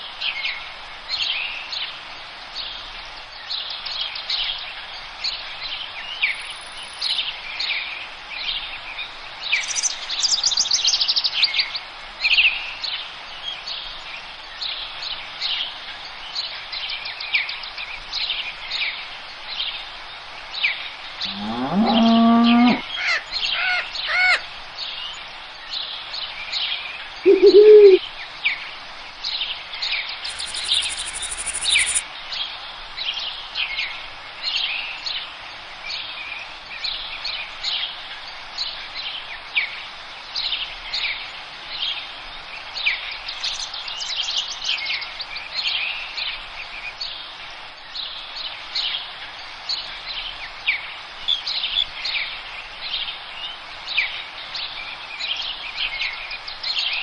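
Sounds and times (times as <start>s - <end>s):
songbirds chirping and trilling: 5.2s - 13.7s, 20.4s - 28.6s, 29.2s - 33.3s
low drawn-out animal call: 21.2s - 24.2s, 27.3s - 28.0s
short low call: 27.3s - 28.0s.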